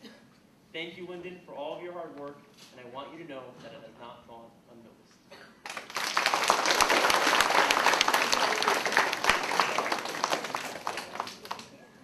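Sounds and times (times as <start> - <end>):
crowd clapping: 5.6 - 11.8.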